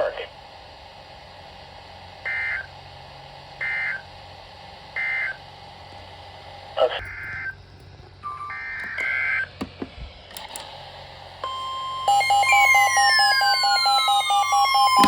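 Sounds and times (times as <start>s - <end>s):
rapidly pulsing beep: 11.4s - 15.0s
steady alert tone: 11.4s - 15.0s.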